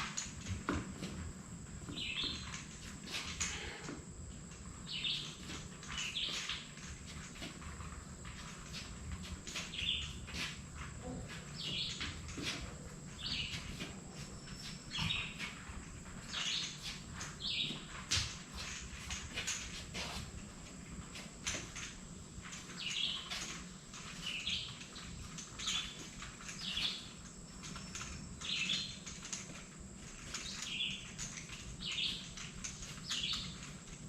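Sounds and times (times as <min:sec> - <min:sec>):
bird chirping: 0:01.9 - 0:02.6, 0:04.8 - 0:06.6, 0:09.6 - 0:10.2, 0:11.0 - 0:12.2, 0:13.1 - 0:15.5, 0:16.2 - 0:17.9, 0:22.7 - 0:23.4, 0:24.1 - 0:29.1, 0:30.3 - 0:33.8.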